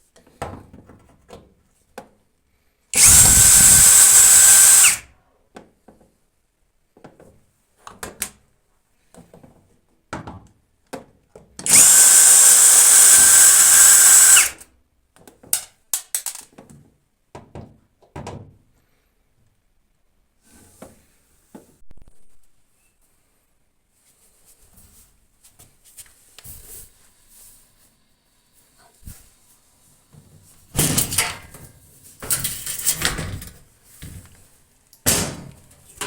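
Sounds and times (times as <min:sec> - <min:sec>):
power drill whining: 0:03.0 - 0:05.0, 0:11.6 - 0:14.6.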